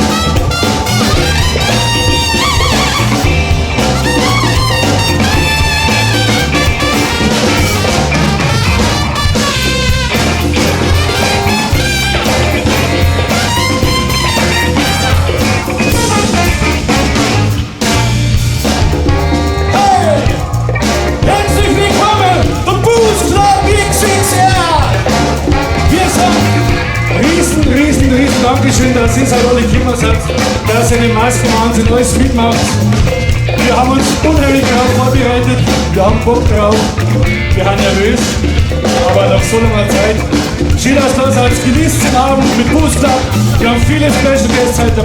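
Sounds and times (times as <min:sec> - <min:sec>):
live jazz-funk band: 0:00.0 - 0:45.0.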